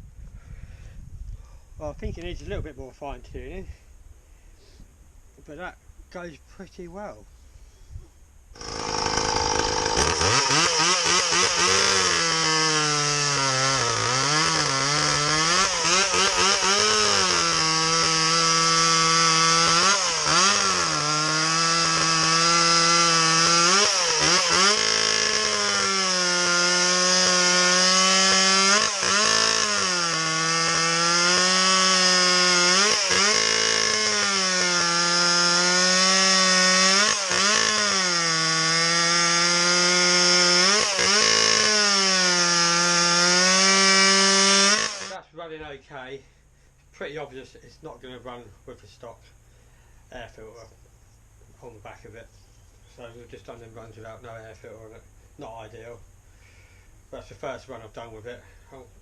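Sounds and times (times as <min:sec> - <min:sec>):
chainsaw cutting wood: 0:08.5 - 0:45.2.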